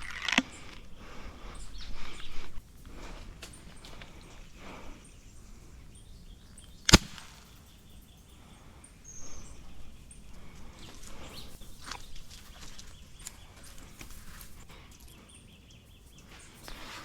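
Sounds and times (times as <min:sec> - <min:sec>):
faint outdoor background: 0:00.0 - 0:17.0
gunshot crack: 0:06.9 - 0:07.4
soft rustling footsteps: 0:09.2 - 0:14.8, 0:16.2 - 0:17.0.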